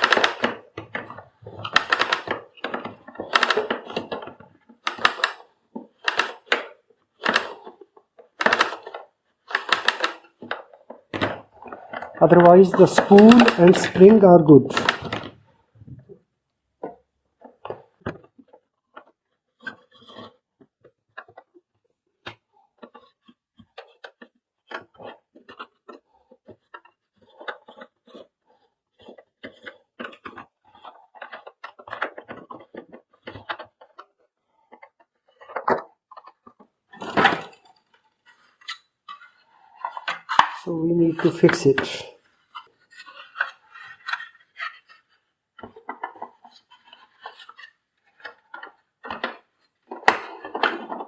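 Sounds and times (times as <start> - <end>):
plastic parts clicking and tapping: 0.0 - 16.2, 16.8 - 21.6, 22.2 - 40.6, 41.2 - 51.0.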